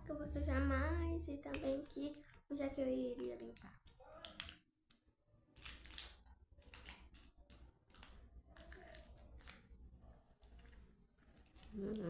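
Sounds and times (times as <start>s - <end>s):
sweet wrapper crinkling: 5.6s - 9.6s.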